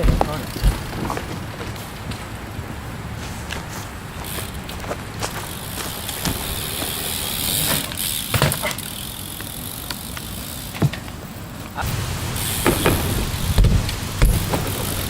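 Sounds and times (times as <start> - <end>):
bike tyres hissing: 0.0 - 15.0
sharp knocks: 12.6 - 15.0.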